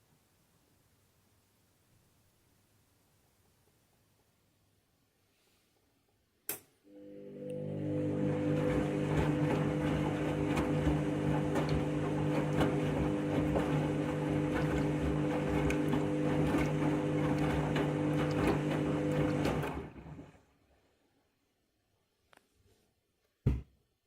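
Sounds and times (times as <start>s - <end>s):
washing machine spinning: 6.9s - 20.8s.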